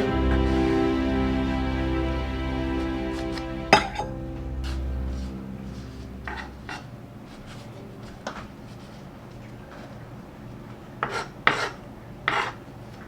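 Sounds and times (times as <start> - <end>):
soft background music: 0.0 - 7.9.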